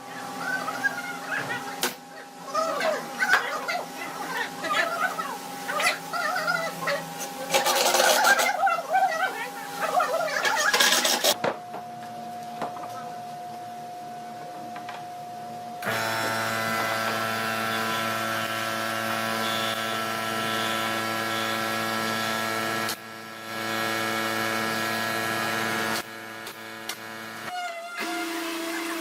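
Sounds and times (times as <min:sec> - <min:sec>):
electric power tool running: 0:15.8 - 0:29.0.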